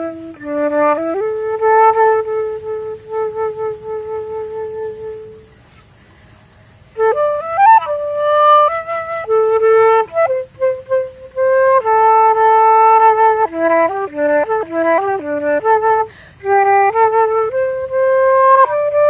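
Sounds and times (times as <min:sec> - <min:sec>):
solo flute melody: 0:00.0 - 0:19.0
steady high hiss: 0:00.0 - 0:19.0.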